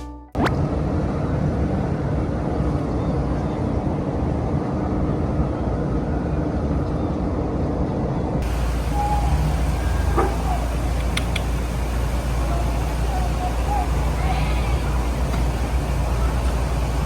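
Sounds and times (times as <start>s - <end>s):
faint steady hum: 8.4s - 17.0s
vehicle rumbling hiss: 8.4s - 17.0s.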